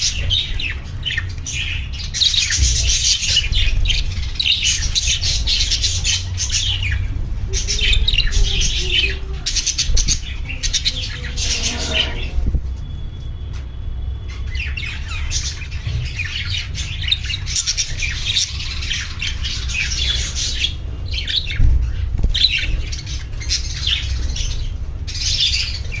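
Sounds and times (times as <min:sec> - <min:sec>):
budgerigars chattering and squawking: 0:00.0 - 0:12.8, 0:14.3 - 0:26.0
steady low rumble: 0:02.2 - 0:13.2.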